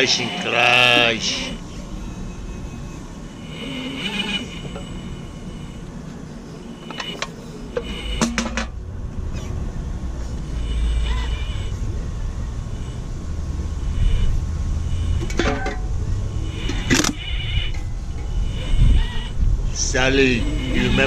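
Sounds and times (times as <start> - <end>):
motor whine bursts: 0.0 - 21.0
low rumble: 7.4 - 21.0.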